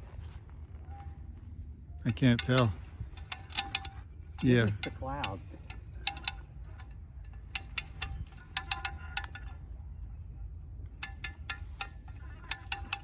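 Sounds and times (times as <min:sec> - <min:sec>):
winch ratchet clicking: 0:02.1 - 0:09.7, 0:11.0 - 0:13.0.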